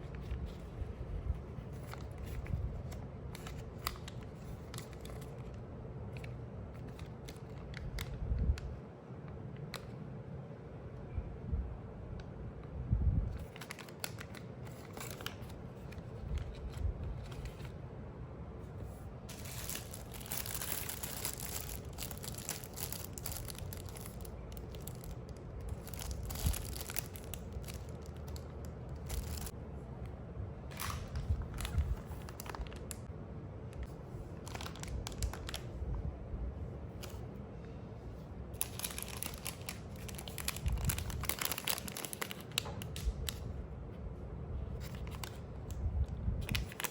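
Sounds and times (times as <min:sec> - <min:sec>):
packaging crinkling and tearing: 0:01.5 - 0:08.2, 0:13.4 - 0:17.7, 0:19.3 - 0:29.6, 0:30.7 - 0:33.1, 0:34.4 - 0:35.8, 0:38.6 - 0:43.5, 0:44.8 - 0:45.8, 0:46.4 - 0:46.9.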